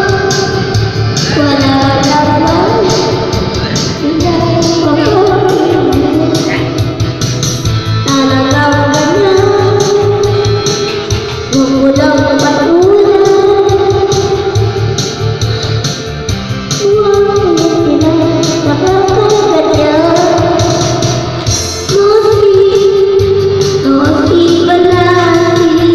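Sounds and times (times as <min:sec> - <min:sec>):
person singing long notes: 0:00.0 - 0:07.2
steady beat: 0:00.0 - 0:22.5
guitar: 0:00.0 - 0:25.9.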